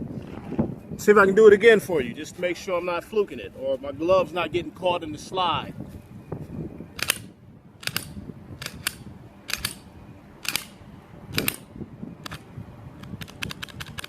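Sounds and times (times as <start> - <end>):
pistol slide racking clicks: 7.0 - 9.8, 10.4 - 12.4, 13.0 - 14.0.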